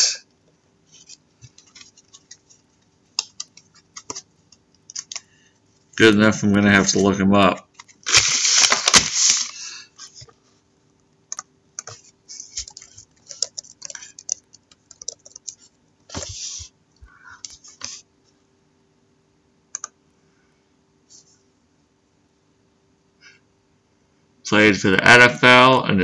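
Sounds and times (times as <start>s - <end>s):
keyboard typing clicks: 11.3s - 12.0s, 12.6s - 16.3s, 19.7s - 20.0s.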